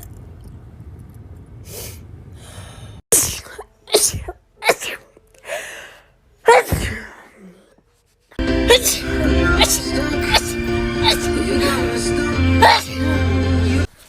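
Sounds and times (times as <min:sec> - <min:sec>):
faint breaths in: 0:01.7 - 0:03.0
woman sneezing: 0:03.1 - 0:05.1, 0:06.4 - 0:07.7, 0:08.7 - 0:09.0, 0:09.6 - 0:11.7, 0:12.6 - 0:13.0.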